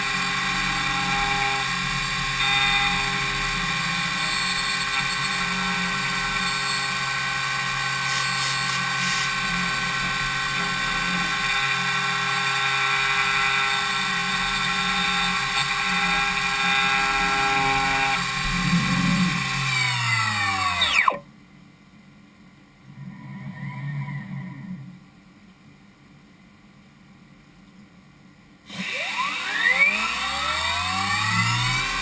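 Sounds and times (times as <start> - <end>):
machine spindle whining: 0.0 - 21.2, 28.7 - 32.0
brief mechanical whir: 8.0 - 9.6, 18.5 - 21.2.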